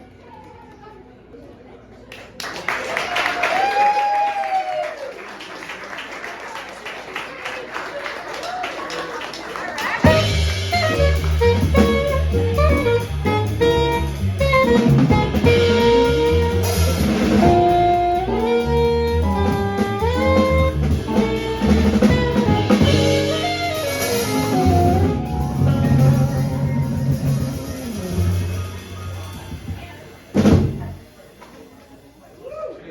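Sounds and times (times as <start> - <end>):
drum kit: 9.9 - 32.0
saxophone melody: 10.0 - 29.6
bass: 10.0 - 31.2
piano: 10.0 - 31.3.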